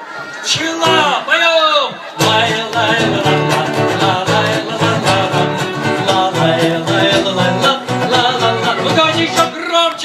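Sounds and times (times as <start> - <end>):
upbeat children's song: 2.2 - 10.0.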